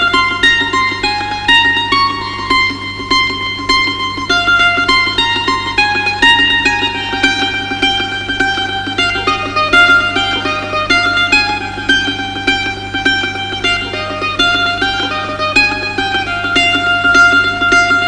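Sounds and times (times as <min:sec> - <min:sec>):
plucked string melody: 0:00.0 - 0:18.0.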